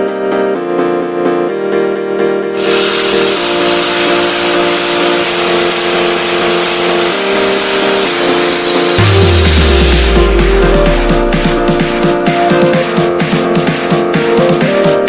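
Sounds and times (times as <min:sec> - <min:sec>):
electronic music with held chords: 0:00.0 - 0:15.0
loud steady hiss: 0:02.6 - 0:11.9
deep falling bass: 0:08.4 - 0:12.3.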